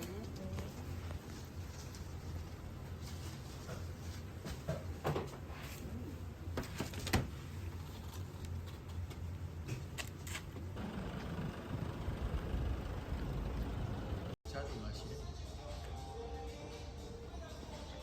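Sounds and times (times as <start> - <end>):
low rumble: 10.8 - 14.4.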